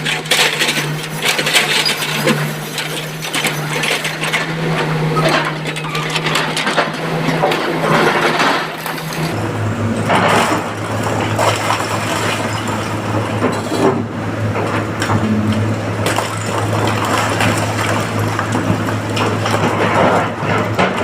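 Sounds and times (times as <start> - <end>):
excavator diesel engine: 0.0 - 21.0
rock and stone crunching: 5.2 - 9.4.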